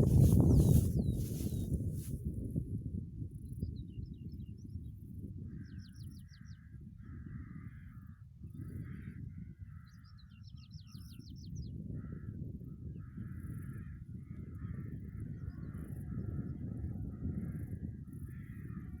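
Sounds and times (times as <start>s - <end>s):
wind buffeting microphone: 0.0s - 9.8s, 11.4s - 19.0s
harsh crow-like bird calls: 7.0s - 10.3s.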